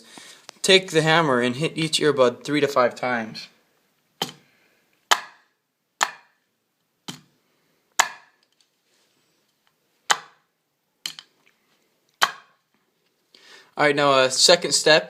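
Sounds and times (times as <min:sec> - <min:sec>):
hammer striking plastic: 0:05.1 - 0:06.4, 0:08.0 - 0:08.4, 0:10.1 - 0:10.4, 0:12.2 - 0:12.6.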